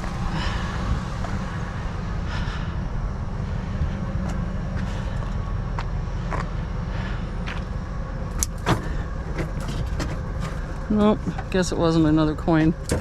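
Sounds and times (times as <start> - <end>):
steady low rumble: 0.0 - 13.0
wire and junk clicking and rustling: 8.3 - 12.0.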